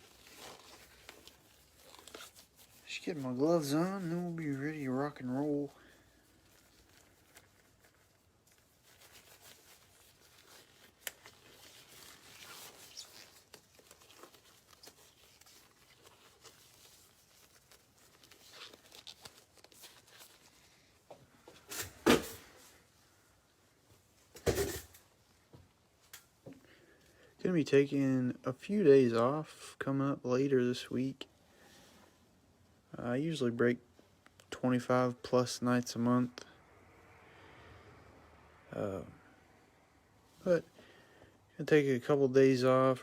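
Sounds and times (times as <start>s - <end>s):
gloves rustling: 0.0s - 27.9s.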